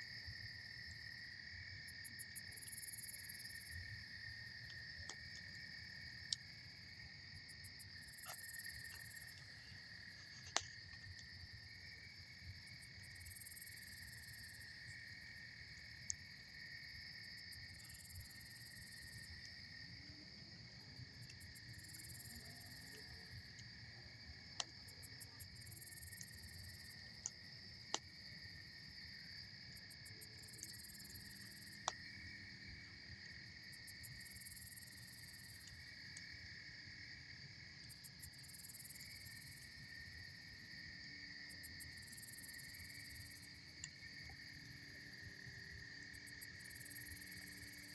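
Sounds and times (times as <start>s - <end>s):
insects trilling: 0.1s - 47.9s
campfire popping: 8.1s - 11.4s.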